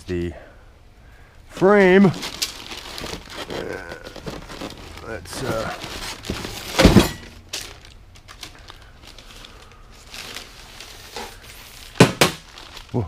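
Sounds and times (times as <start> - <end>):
parts clattering: 2.1 - 12.8
packing rustling: 2.1 - 13.0.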